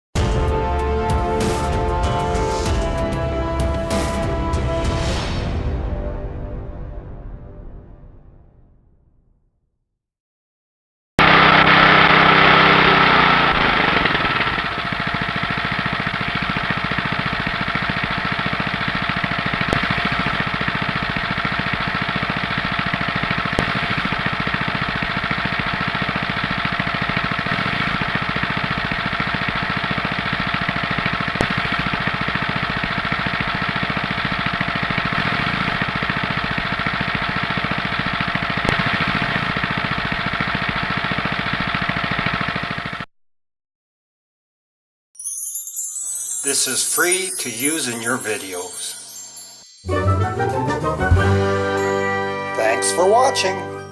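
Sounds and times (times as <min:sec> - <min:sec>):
lawn mower engine running: 0:01.1 - 0:04.4, 0:11.2 - 0:43.1, 0:46.4 - 0:53.2.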